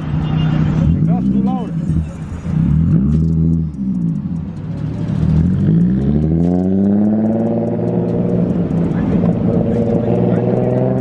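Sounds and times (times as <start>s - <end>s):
car engine revving loud exhaust: 0.0s - 11.0s.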